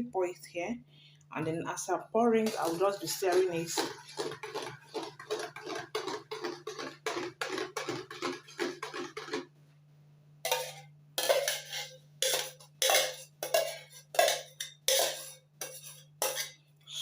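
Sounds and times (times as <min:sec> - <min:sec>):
low steady hum: 0:00.0 - 0:17.0
spoon stirring in a bowl: 0:02.2 - 0:09.5, 0:10.5 - 0:16.6
spoon scraping a bowl: 0:02.4 - 0:09.5, 0:10.5 - 0:17.0.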